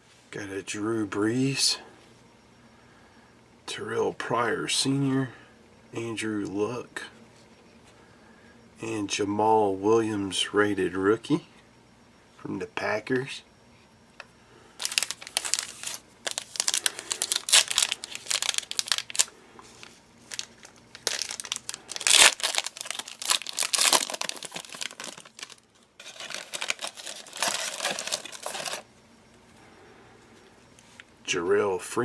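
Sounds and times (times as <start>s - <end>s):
plastic wrapper tearing and crinkling: 14.8s - 19.3s, 20.2s - 28.8s.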